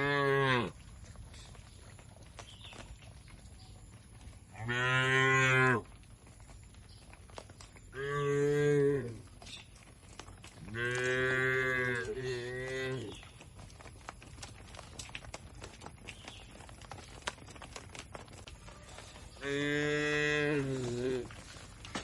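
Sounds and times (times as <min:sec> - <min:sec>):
cow mooing: 0:00.0 - 0:00.8, 0:10.7 - 0:13.1, 0:19.4 - 0:21.3.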